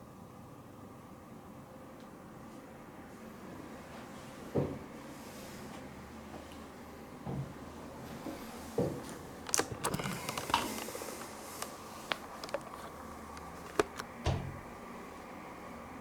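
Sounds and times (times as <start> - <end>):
handling rustle: 9.0 - 14.8
microphone clip clicks: 9.5 - 14.1.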